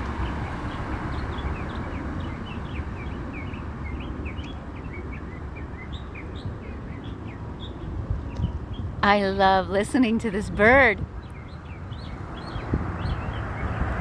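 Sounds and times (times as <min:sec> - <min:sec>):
songbird chirping: 0:00.0 - 0:14.0.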